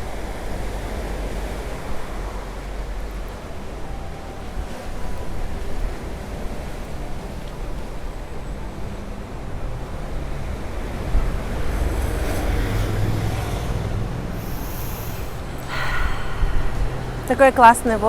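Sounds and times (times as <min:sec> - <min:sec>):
sea surf: 0:00.0 - 0:18.0
wind buffeting microphone: 0:09.2 - 0:18.0
low hum: 0:13.4 - 0:18.0.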